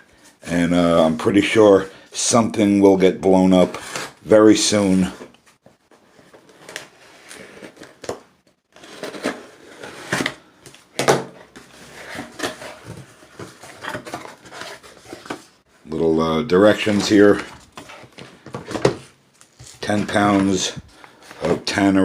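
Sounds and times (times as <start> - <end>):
box rustling and scraping: 5.9 - 10.6, 11.2 - 15.6, 16.8 - 22.0.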